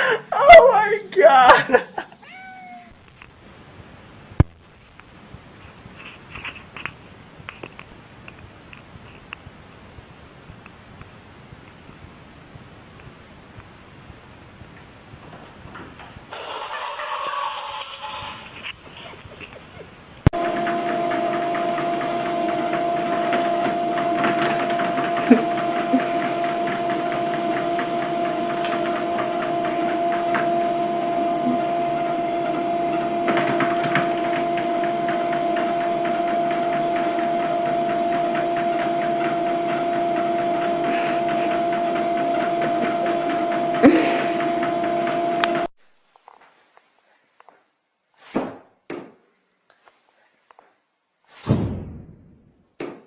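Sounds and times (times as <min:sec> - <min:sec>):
small machine humming: 0:20.3 - 0:45.7.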